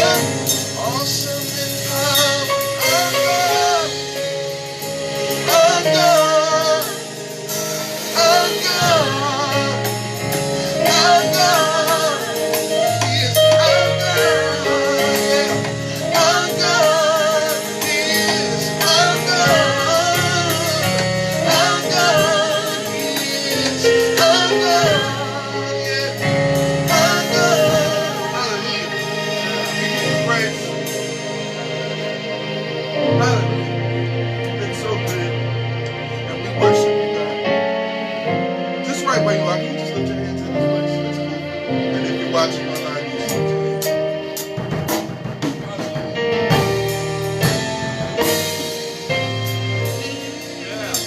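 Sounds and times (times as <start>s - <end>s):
person singing with vibrato: 0.0s - 30.9s
sustained keyboard chords: 0.0s - 51.0s.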